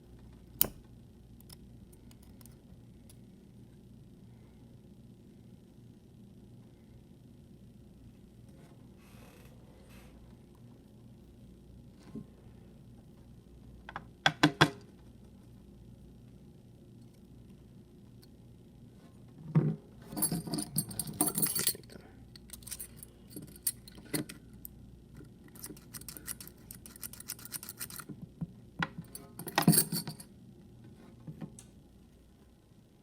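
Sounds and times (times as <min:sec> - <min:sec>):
small metal lock parts clinking: 0:20.1 - 0:24.7, 0:25.5 - 0:28.1, 0:29.0 - 0:30.3.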